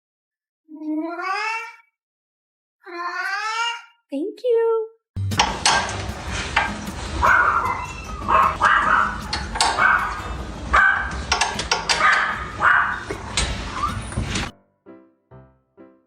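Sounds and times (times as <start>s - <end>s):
pet animal crying: 0.8s - 2.0s, 2.8s - 4.0s, 7.1s - 11.2s
scattered clicks: 11.1s - 12.4s.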